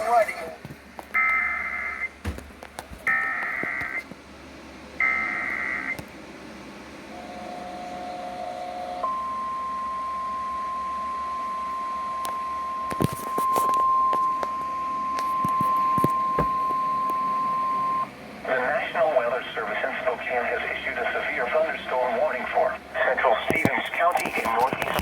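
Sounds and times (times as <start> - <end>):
static crackles: 0.0 - 4.1, 18.5 - 25.0
steady alarm tone: 1.2 - 4.0, 5.0 - 6.0, 7.1 - 18.1.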